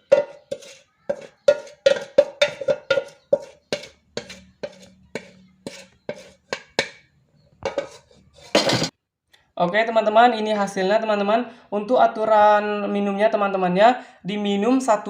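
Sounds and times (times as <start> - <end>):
metal spoon knocking on cookware: 0.0 - 8.9.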